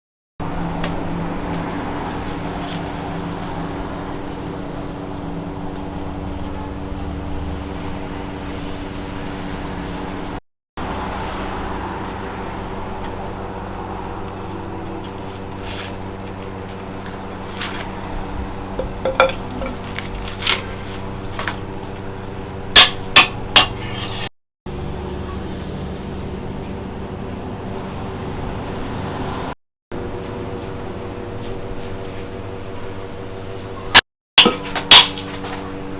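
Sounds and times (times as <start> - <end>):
metallic clinks and taps: 18.8 - 19.7
metal-on-metal strikes: 18.8 - 19.8, 22.8 - 24.3.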